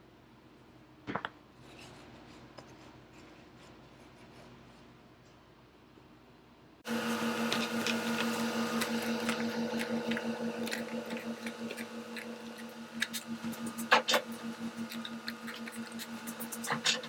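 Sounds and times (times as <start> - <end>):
machine hum: 6.9 - 17.0.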